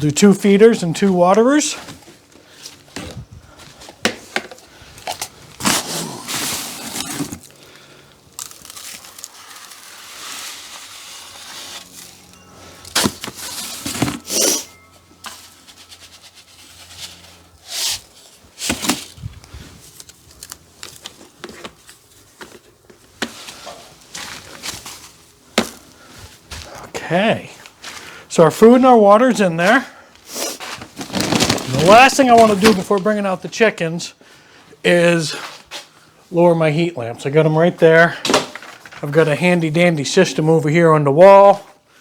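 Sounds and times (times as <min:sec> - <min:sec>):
rustling: 0:30.4 - 0:33.1.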